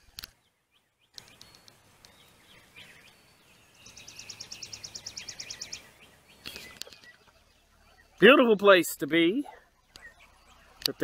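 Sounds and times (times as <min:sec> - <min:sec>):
soft bird chirps: 0:00.0 - 0:11.0
songbird trilling: 0:00.7 - 0:08.6, 0:09.4 - 0:11.0.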